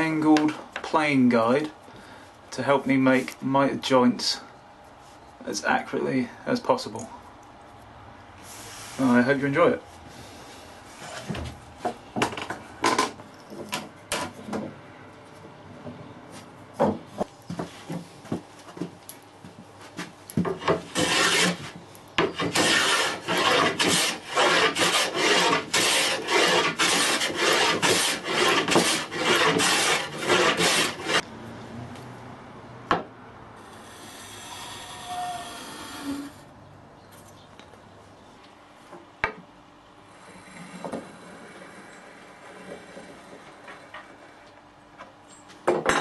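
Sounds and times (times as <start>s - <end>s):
rhythmic hand sawing of wood: 20.5s - 31.2s.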